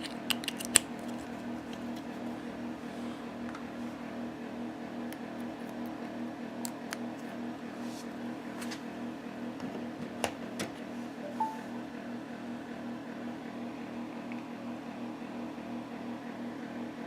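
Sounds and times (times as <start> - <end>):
short high beep: 11.2 - 11.7.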